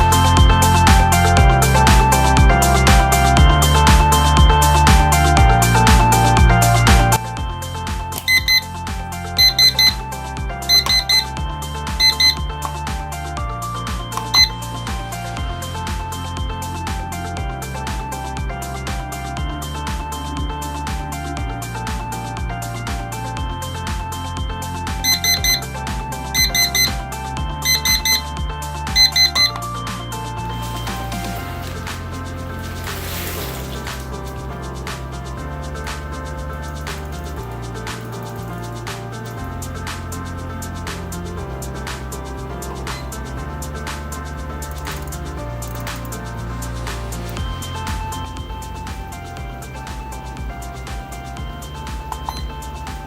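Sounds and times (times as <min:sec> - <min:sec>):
background music: 0:00.0 - 0:53.0
kitchen timer alarm beeping: 0:08.2 - 0:08.8, 0:09.4 - 0:10.0, 0:10.6 - 0:12.8, 0:13.8 - 0:15.6, 0:24.6 - 0:32.3, 0:47.4 - 0:53.0.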